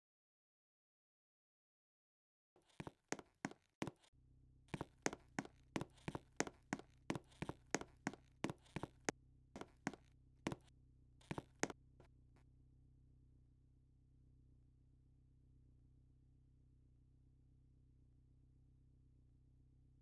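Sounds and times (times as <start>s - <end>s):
sharp taps: 4.8s - 10.7s, 11.3s - 11.7s.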